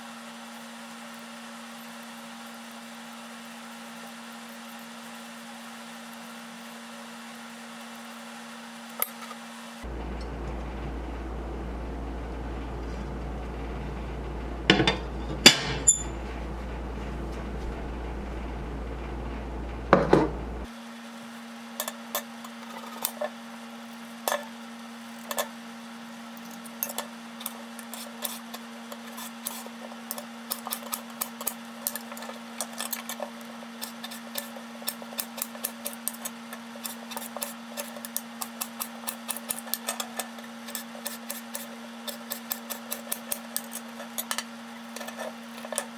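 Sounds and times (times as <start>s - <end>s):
steady hum: 9.8s - 20.7s
dishes and utensils clinking: 14.7s - 16.2s.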